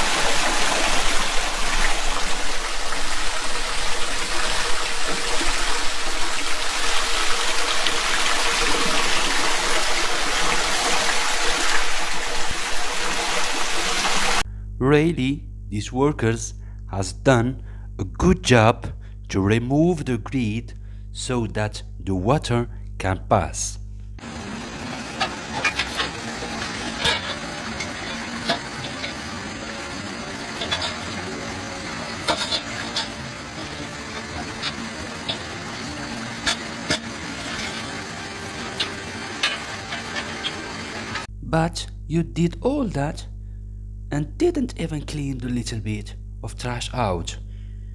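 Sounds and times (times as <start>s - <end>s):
water rushing into storm drain: 0.0s - 14.4s, 24.2s - 41.3s.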